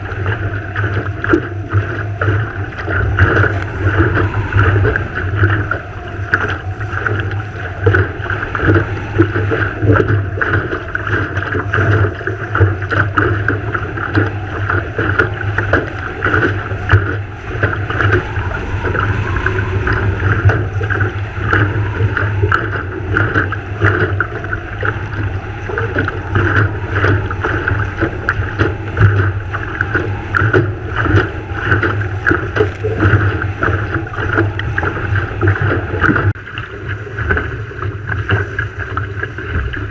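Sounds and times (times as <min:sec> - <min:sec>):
water slapping against hull: 0:00.0 - 0:39.9
wind buffeting microphone: 0:00.0 - 0:39.9.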